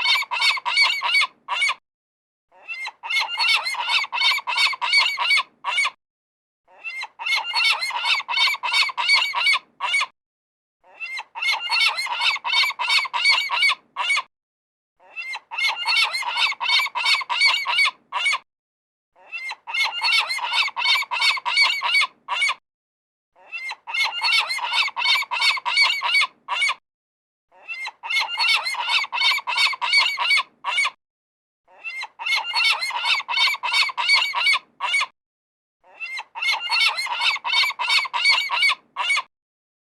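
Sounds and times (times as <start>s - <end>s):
seagulls squawking: 0.0s - 1.8s, 2.7s - 5.9s, 6.9s - 10.1s, 11.0s - 14.2s, 15.2s - 18.4s, 19.4s - 22.6s, 23.6s - 26.7s, 27.7s - 30.9s, 31.9s - 35.0s, 36.0s - 39.3s.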